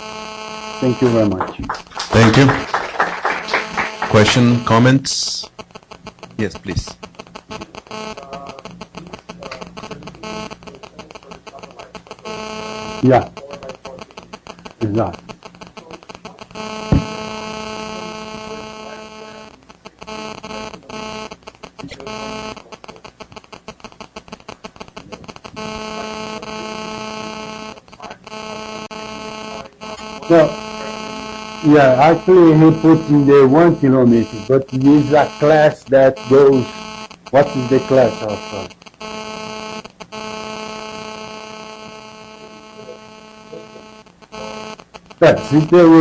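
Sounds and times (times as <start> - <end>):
electrical interference buzz: 0.0 - 46.0.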